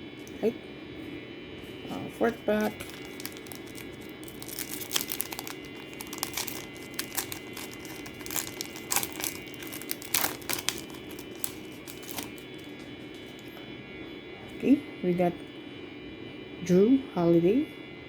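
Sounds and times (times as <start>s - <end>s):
plastic wrapper tearing and crinkling: 2.6s - 13.4s.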